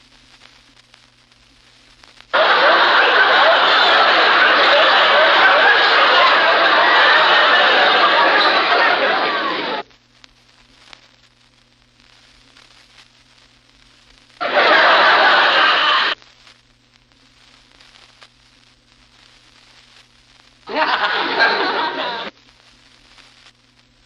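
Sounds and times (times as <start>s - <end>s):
faint hiss: 0.0s - 8.4s, 9.7s - 20.8s, 21.6s - 24.0s
studio audience laughter: 2.4s - 9.8s, 14.4s - 16.2s, 20.7s - 22.3s
steady low hum: 9.8s - 15.4s, 16.2s - 24.0s.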